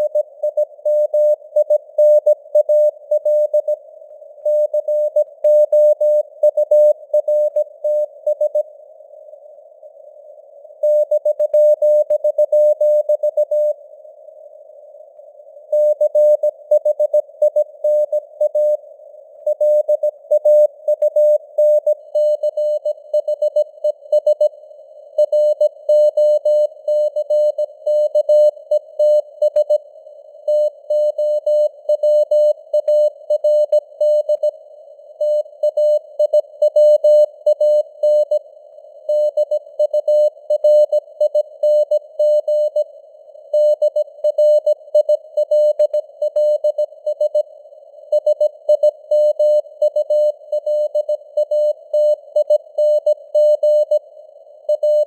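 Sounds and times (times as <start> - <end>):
faint radio noise hiss: 0.0 - 36.6.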